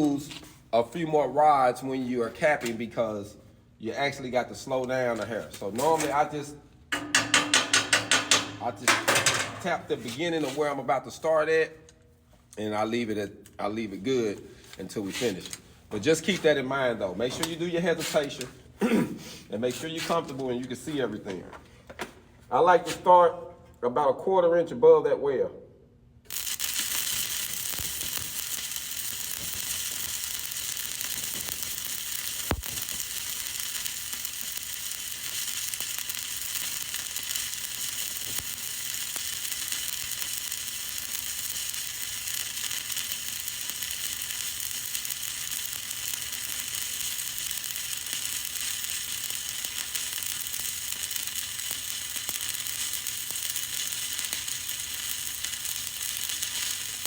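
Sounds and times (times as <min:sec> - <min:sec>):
welding arc crackling hiss: 0:00.0 - 0:02.9, 0:04.1 - 0:10.9, 0:26.3 - 0:57.0.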